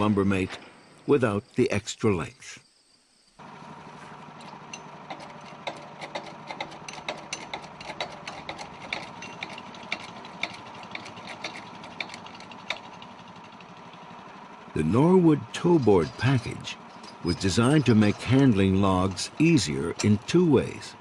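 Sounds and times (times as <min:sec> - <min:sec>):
machine humming: 0:03.4 - 0:21.0
irregular ticks and clicks: 0:04.4 - 0:13.1.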